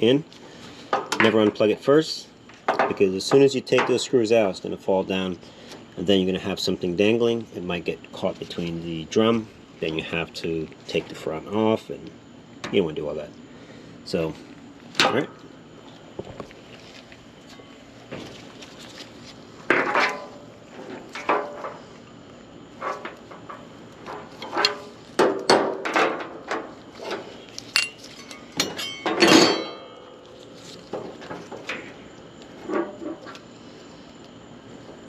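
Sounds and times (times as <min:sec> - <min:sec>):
metal rattle: 0:22.8 - 0:30.0
tools clinking on sheet metal: 0:27.7 - 0:30.0.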